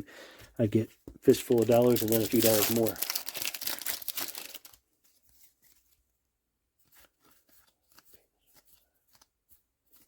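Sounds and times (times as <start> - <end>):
trading cards clicking and rustling: 1.3 - 4.8.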